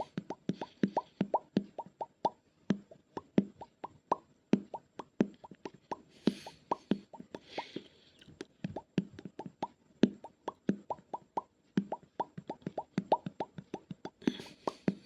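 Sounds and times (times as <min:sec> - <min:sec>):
hissy breaths: 0:00.0 - 0:01.4, 0:05.7 - 0:08.5, 0:13.8 - 0:15.0
mouth pops: 0:00.0 - 0:15.0.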